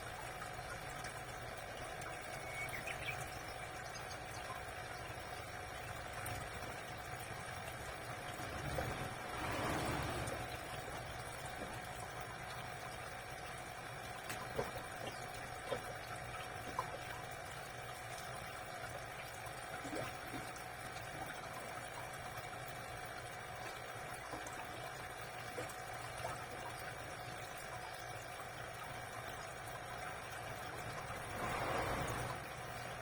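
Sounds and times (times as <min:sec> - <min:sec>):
aquarium water trickling: 0:00.0 - 0:33.0
pump hum: 0:00.0 - 0:33.0
small sharp clicks or splashes: 0:14.1 - 0:18.4.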